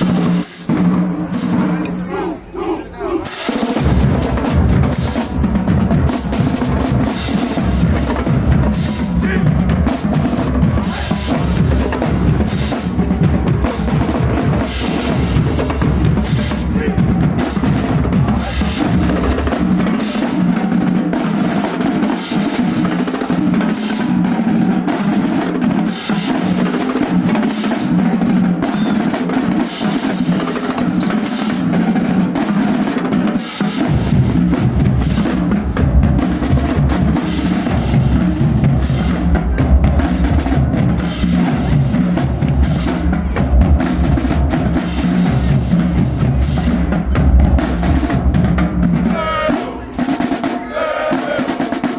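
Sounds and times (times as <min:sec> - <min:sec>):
bass drums: 0:03.5 - 0:20.0, 0:33.8 - 0:51.9.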